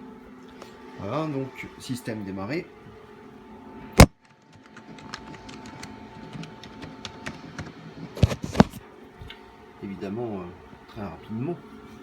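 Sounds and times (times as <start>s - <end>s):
keyboard typing: 4.0s - 8.8s.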